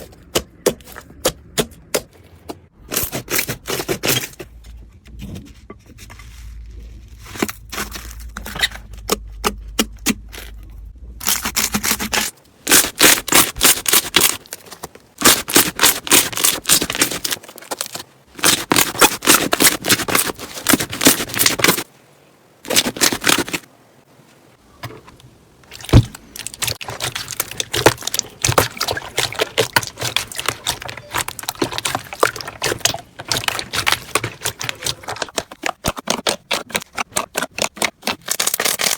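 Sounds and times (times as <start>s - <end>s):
slime crackling and popping: 25.8s - 38.9s.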